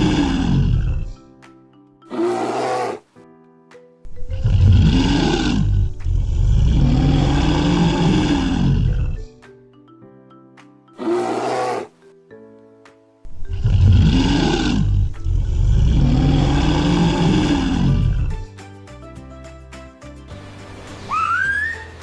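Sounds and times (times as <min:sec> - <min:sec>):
large animal roaring: 0:00.0 - 0:01.1, 0:02.2 - 0:03.0, 0:04.4 - 0:09.2, 0:13.6 - 0:18.2
light mallet percussion music: 0:00.0 - 0:22.0.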